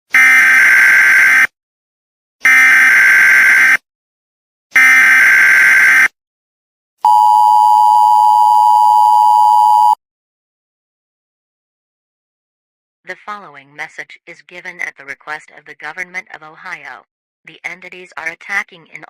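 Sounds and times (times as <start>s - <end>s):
two-tone attention signal: 7.1s - 10.0s.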